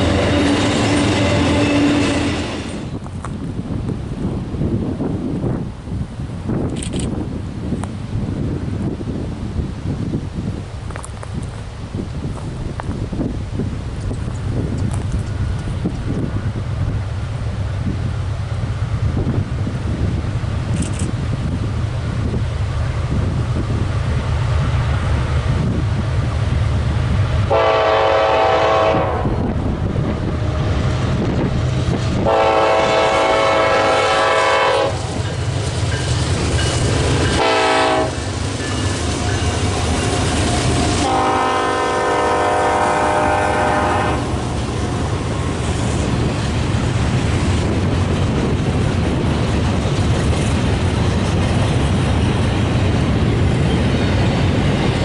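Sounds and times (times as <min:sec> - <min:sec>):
passing train rumble: 0:00.0 - 0:55.0
locomotive air horn: 0:27.5 - 0:29.5, 0:32.2 - 0:35.2, 0:37.3 - 0:38.2, 0:39.3 - 0:44.5.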